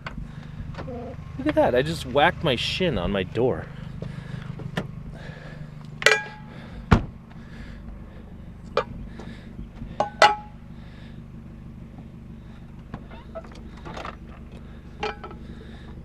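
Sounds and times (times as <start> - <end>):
steady low hum: 0.0 - 16.0
heavy thump: 6.8 - 7.2.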